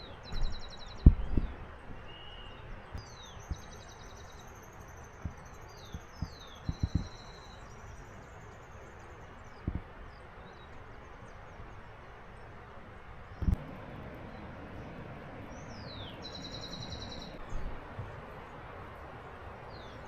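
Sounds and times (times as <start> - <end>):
birds chirping and trilling: 0.0 - 20.0
steady background hiss: 0.0 - 20.0
dull low thumps: 0.2 - 1.7.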